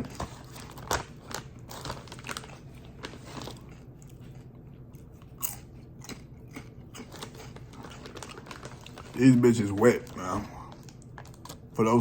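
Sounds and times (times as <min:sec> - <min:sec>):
chewing: 0:00.0 - 0:09.2
crunching chips: 0:00.0 - 0:12.0.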